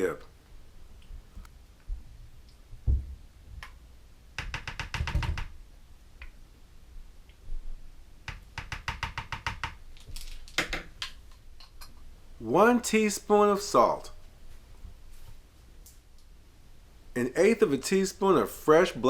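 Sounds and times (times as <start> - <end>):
low thump: 2.8 - 3.2.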